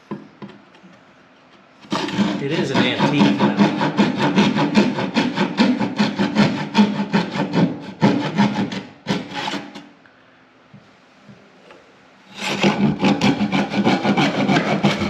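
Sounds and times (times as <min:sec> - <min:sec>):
saw cutting through wood: 0:01.8 - 0:09.8, 0:12.3 - 0:15.0.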